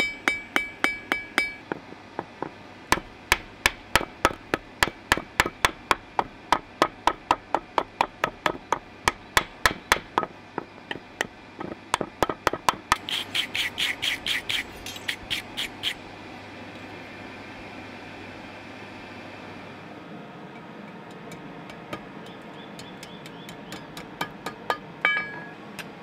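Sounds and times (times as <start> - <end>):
hammer striking anvil: 0.0 - 1.8, 24.0 - 25.6.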